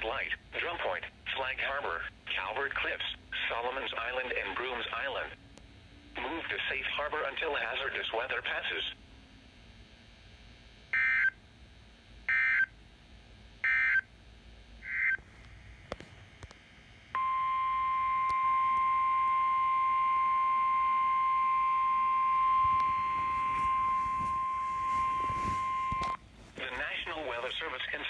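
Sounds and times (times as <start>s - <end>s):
steady single-pitch alert tone: 17.2s - 26.2s.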